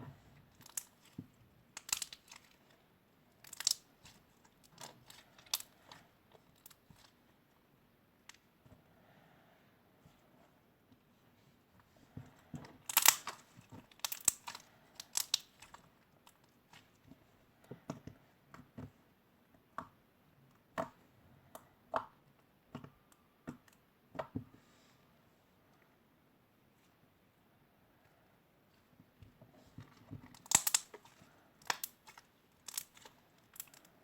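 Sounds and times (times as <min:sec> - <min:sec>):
slime clicking and popping: 0:12.9 - 0:15.8, 0:30.4 - 0:33.8.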